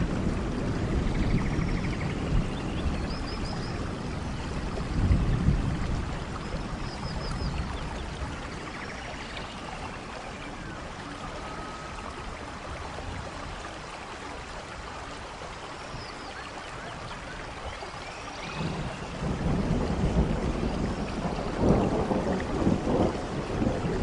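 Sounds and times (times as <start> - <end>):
low rumble of thunder: 0.0 - 14.0, 18.3 - 24.0
steady rainfall: 0.0 - 24.0.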